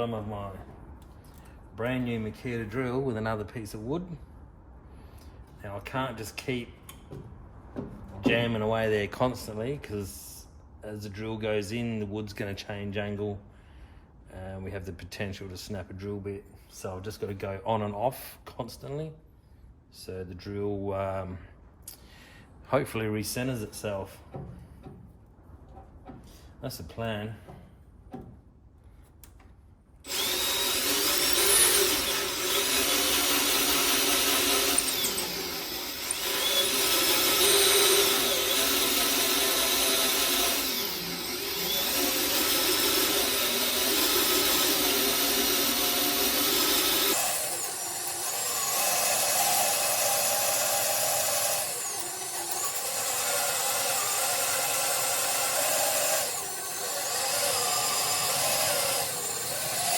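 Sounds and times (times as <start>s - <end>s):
electric drill whining: 30.1s - 59.9s.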